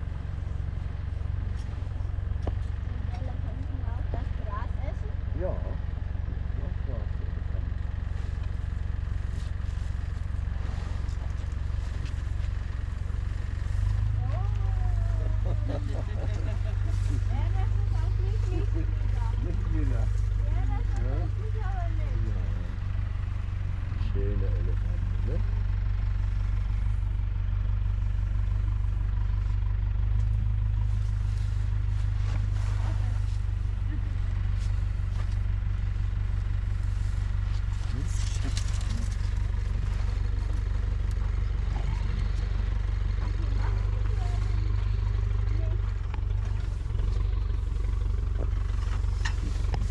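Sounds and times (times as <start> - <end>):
vehicle engine idling: 0.0 - 49.9.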